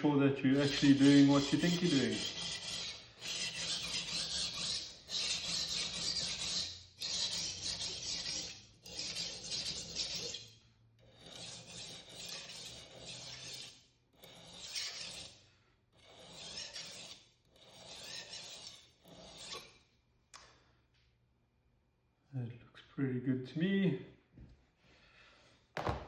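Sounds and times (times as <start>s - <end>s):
knife rasping on sharpening plate: 0.5s - 15.4s, 16.0s - 19.8s.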